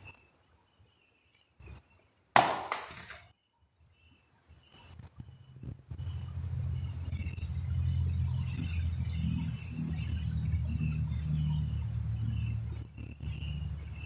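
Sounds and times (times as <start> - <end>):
insect trilling: 0.0 - 14.0
sharp impacts: 2.4 - 3.3.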